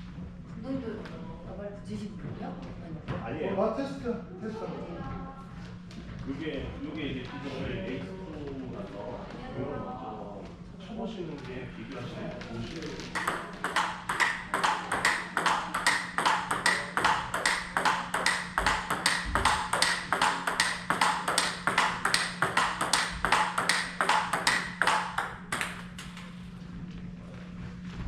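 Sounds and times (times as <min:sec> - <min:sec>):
table tennis ball hitting paddles: 0:13.2 - 0:26.3.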